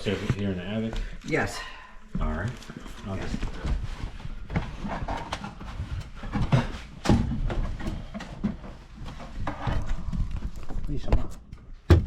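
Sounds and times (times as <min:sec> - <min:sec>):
footsteps: 0:00.0 - 0:11.4
knocks and thumps: 0:03.2 - 0:12.0.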